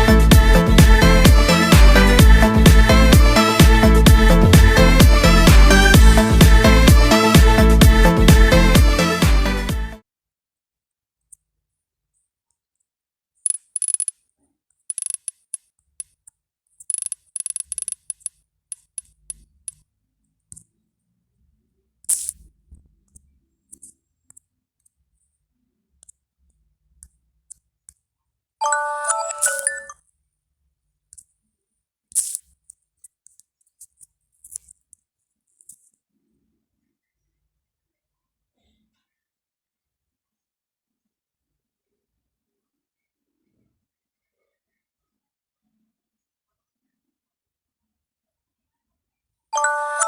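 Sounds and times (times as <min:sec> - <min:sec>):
high-pitched phone alert chimes: 0:28.6 - 0:29.9, 0:49.6 - 0:50.0
melodic phone jingle: 0:28.6 - 0:29.9, 0:49.6 - 0:50.0.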